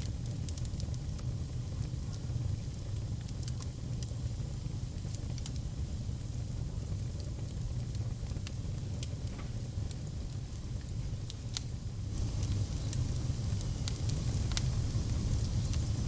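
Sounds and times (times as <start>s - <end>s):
fire pops and snaps: 0.0s - 5.7s, 7.4s - 16.0s
low rumble of flames: 0.0s - 16.0s
fire hiss: 8.6s - 16.0s.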